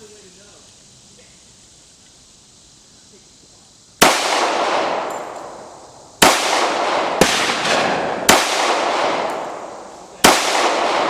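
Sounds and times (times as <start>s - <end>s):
pistol shots echoing: 4.0s - 11.0s.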